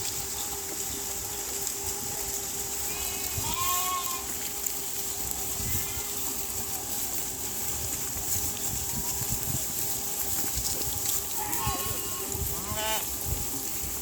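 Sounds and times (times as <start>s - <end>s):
constant low hum: 0.0s - 14.0s
faint sheep bleat: 2.8s - 4.5s, 5.6s - 6.4s, 11.4s - 13.1s.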